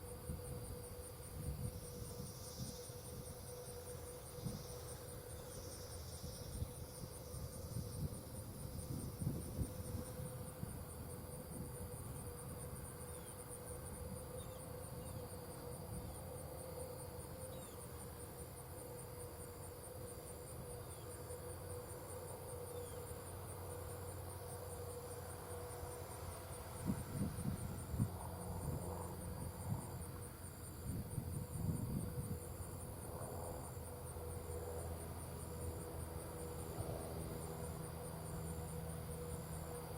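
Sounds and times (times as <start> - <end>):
insect chirping in slow pulses: 0.0 - 39.9
insects trilling: 0.0 - 39.9.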